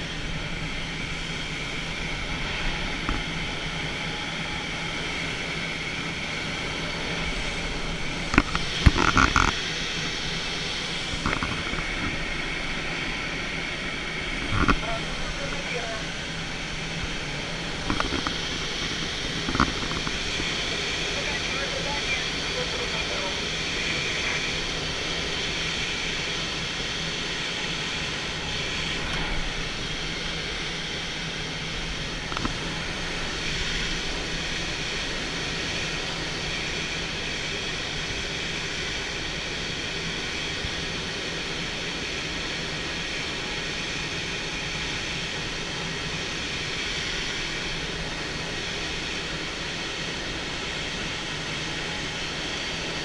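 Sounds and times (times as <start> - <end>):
rush of air: 0.0 - 21.1
aircraft engine drone: 0.0 - 53.0.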